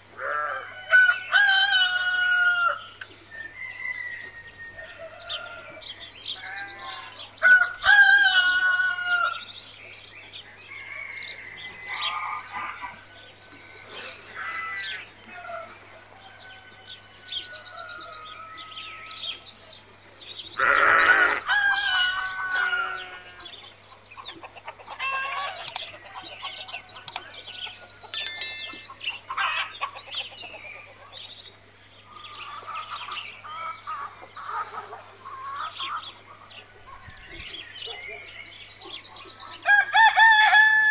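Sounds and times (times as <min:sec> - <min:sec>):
songbirds chirping and trilling: 0:00.1 - 0:40.9
chickens clucking: 0:23.9 - 0:26.8.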